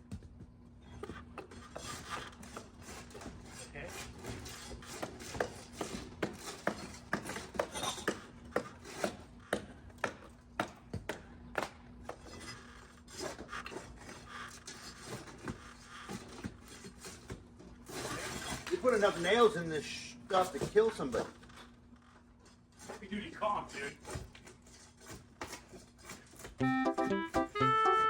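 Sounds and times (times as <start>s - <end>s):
tool scraping roof shingles: 0.9s - 10.8s, 12.0s - 19.6s, 22.6s - 26.6s.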